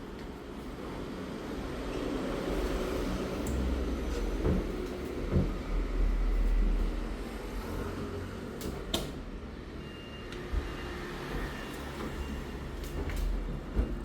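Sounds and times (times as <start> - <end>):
washing machine rumbling: 0.0 - 9.7, 10.4 - 14.0
washing machine knocks and clunks: 4.2 - 6.0.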